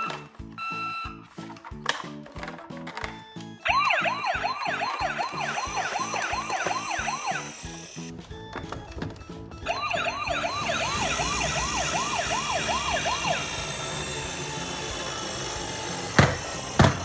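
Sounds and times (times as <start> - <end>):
background music: 0.0 - 17.0
toy siren yelping: 3.6 - 8.1, 9.6 - 17.0.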